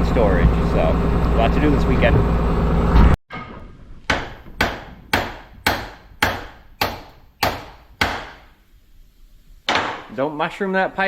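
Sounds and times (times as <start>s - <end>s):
hammer striking metal pipe: 3.3s - 8.5s.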